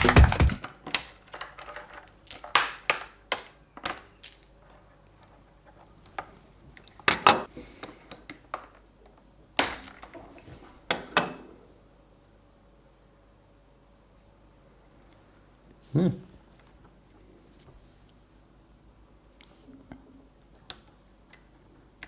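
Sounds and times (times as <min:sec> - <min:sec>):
keycaps clattering into container: 0:00.0 - 0:00.6
keycaps being prised off: 0:00.0 - 0:04.1.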